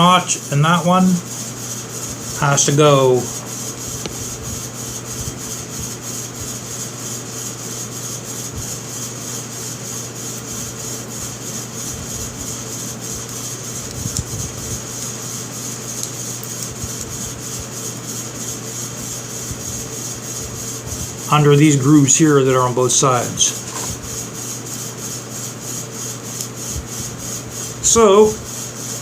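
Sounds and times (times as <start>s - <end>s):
background hum and hiss: 0.0s - 29.0s.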